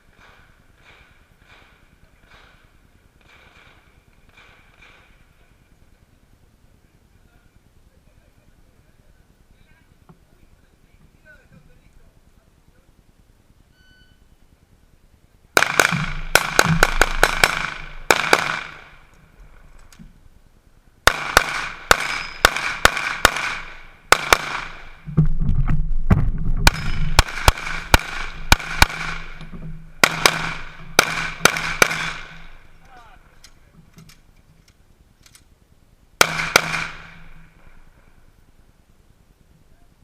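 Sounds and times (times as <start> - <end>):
rapid pistol fire: 15.6 - 19.1, 21.0 - 25.1, 26.6 - 29.4, 30.0 - 32.7, 36.2 - 37.5.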